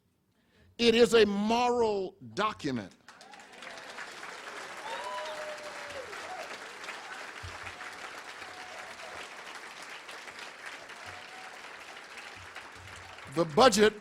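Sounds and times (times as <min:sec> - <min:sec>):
audience applauding: 0:03.0 - 0:14.0.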